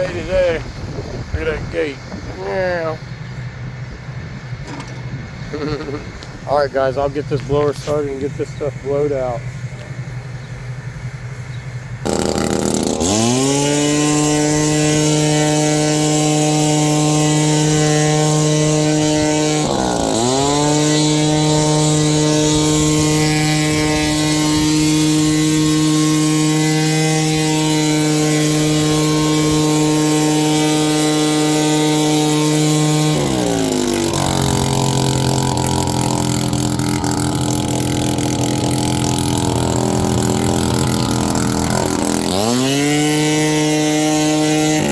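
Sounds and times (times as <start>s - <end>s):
leaf blower engine running: 7.4s - 44.9s.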